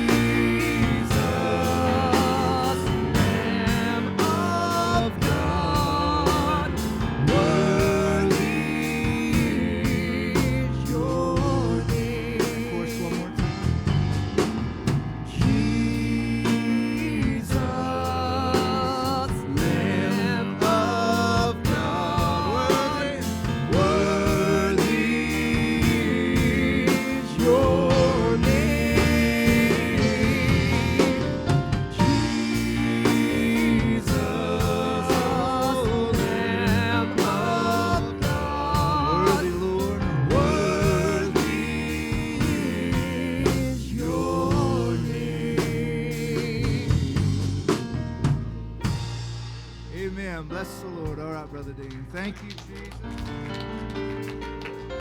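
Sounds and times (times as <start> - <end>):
gospel band playing: 0.0 - 55.0
person singing: 32.0 - 47.7.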